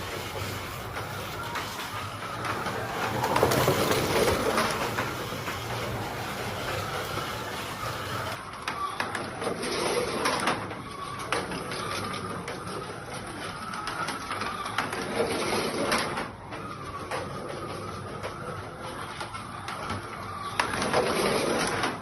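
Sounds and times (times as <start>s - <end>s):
small electric motor whining: 0.0s - 9.0s
slot car clicking and rattling: 0.0s - 22.0s.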